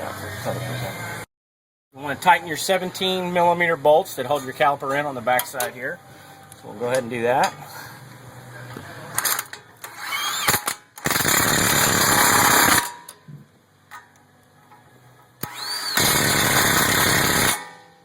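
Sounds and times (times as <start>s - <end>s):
impact wrench bursts: 9.2s - 13.0s, 15.4s - 17.8s.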